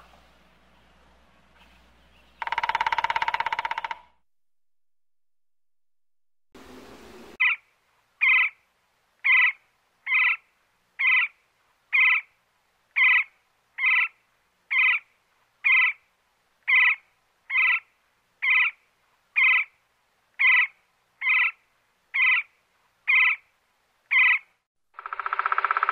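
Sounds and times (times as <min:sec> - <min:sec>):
woodpecker calling: 0:02.2 - 0:04.2, 0:07.4 - 0:08.6, 0:09.2 - 0:12.3, 0:13.0 - 0:16.0, 0:16.7 - 0:18.8, 0:19.4 - 0:19.7, 0:20.4 - 0:21.6, 0:22.2 - 0:22.5, 0:23.1 - 0:23.4, 0:24.1 - 0:25.9.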